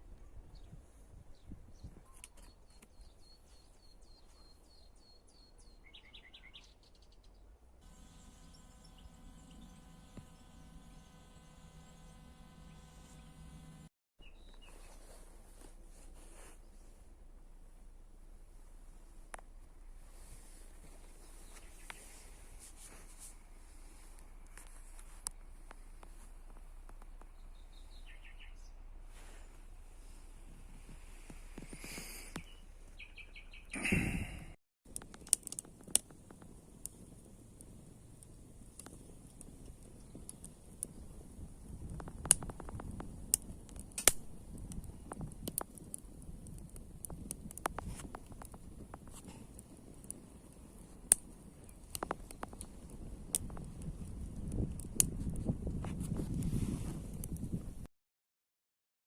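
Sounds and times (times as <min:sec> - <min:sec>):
songbird singing: 0:00.2 - 0:15.1, 0:27.2 - 0:28.8, 0:32.1 - 0:34.4
high bird chirps: 0:27.4 - 0:28.7, 0:32.3 - 0:33.8.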